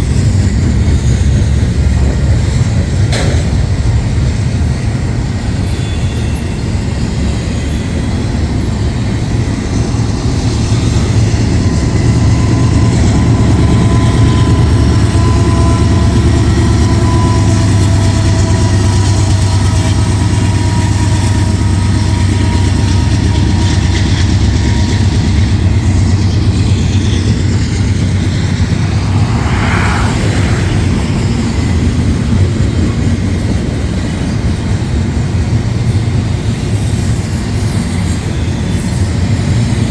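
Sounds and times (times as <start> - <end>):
freight train rumbling on rails: 0.0 - 39.9
thin whining tones: 27.6 - 32.3.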